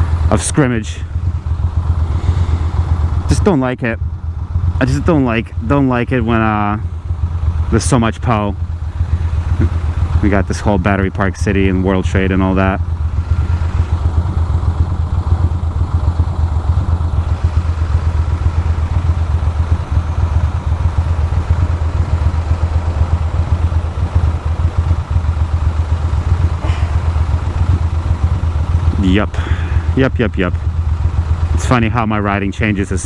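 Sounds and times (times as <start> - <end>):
motorcycle engine running: 0.0 - 33.0.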